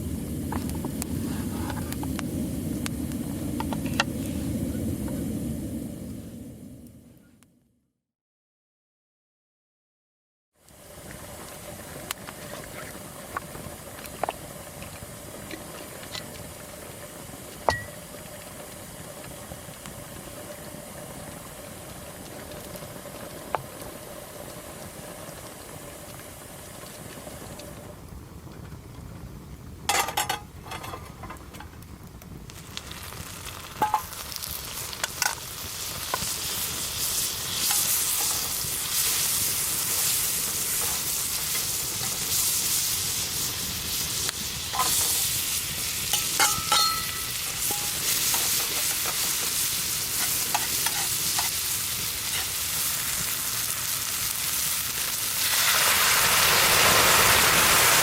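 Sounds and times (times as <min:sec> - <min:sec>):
food sizzling in a pan: 0:10.6 - 0:28.0, 0:32.5 - 0:58.0
utensils clinking against pan: 0:29.9 - 0:31.7, 0:44.7 - 0:45.2, 0:46.1 - 0:48.6, 0:50.5 - 0:51.6.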